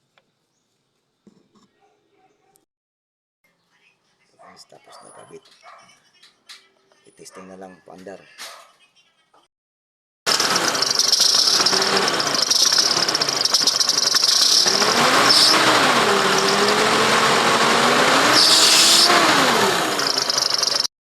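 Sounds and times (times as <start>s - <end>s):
engine running: 10.3s - 20.9s.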